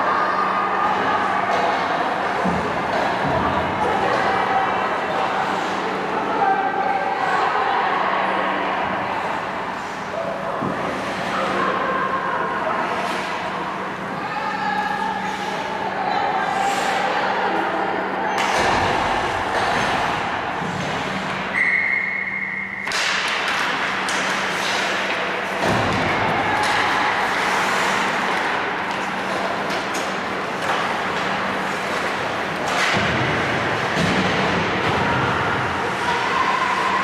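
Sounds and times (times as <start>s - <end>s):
hockey sticks and puck knocking: 22.8s - 36.0s
skates scraping ice: 22.9s - 37.0s.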